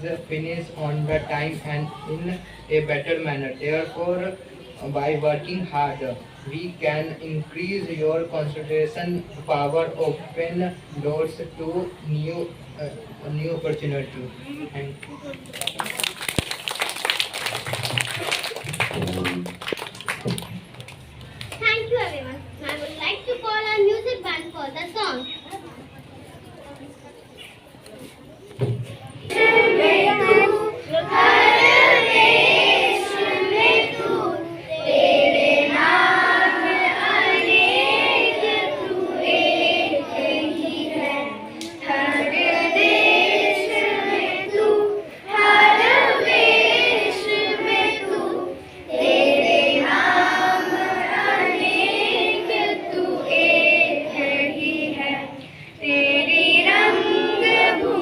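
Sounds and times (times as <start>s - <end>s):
children singing: 29.3s - 58.0s.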